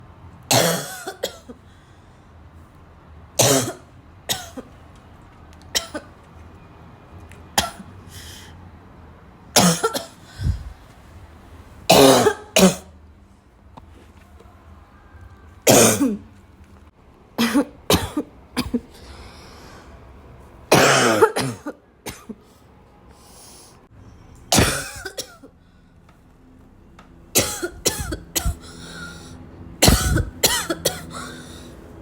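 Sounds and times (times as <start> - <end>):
person coughing hard: 0.5 - 1.6, 3.4 - 4.7, 7.6 - 7.9, 9.6 - 10.6, 11.9 - 12.9, 15.7 - 16.3, 17.4 - 19.0, 20.7 - 22.4, 24.5 - 25.5, 27.4 - 29.2, 29.8 - 31.6.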